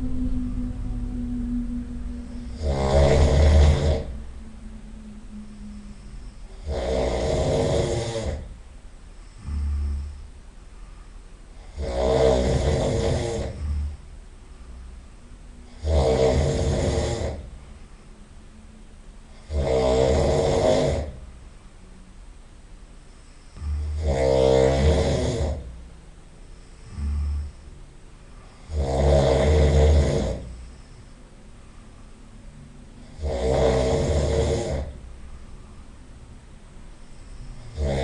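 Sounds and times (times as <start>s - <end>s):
quiet breaths: 0.0s - 38.0s
person snoring loudly: 2.2s - 8.6s, 9.2s - 10.3s, 11.5s - 14.0s, 15.6s - 17.5s, 19.3s - 21.2s, 23.5s - 25.8s, 26.7s - 27.6s, 28.5s - 31.1s, 33.0s - 35.0s, 37.1s - 38.0s.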